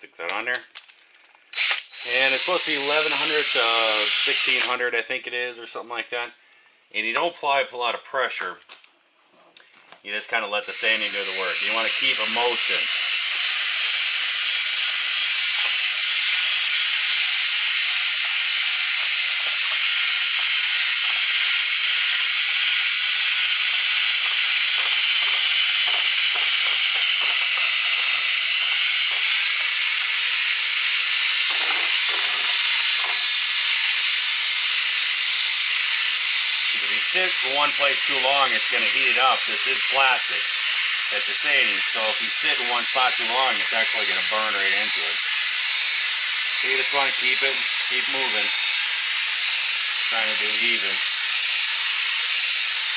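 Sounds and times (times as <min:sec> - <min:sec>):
drill sanding plastic: 0:01.5 - 0:04.8, 0:10.6 - 0:52.9.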